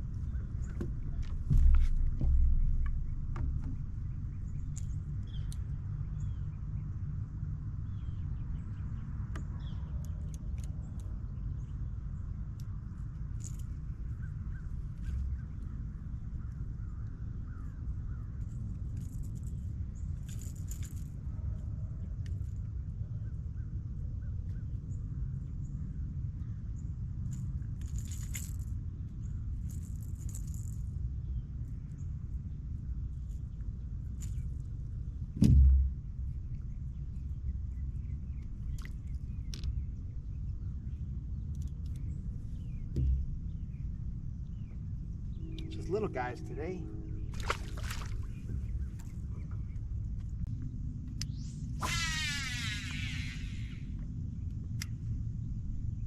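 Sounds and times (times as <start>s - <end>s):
steady low rumble: 0.0s - 56.0s
sharp thud: 35.4s - 36.1s, 43.0s - 43.5s.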